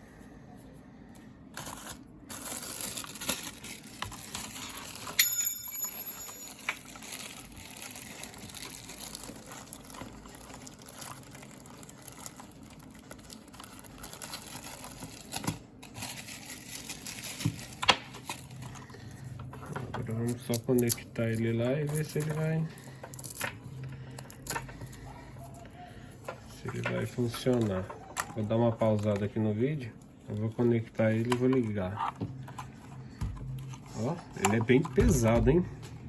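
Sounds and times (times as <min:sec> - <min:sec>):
packaging crinkling: 0:01.6 - 0:05.2, 0:06.1 - 0:19.3.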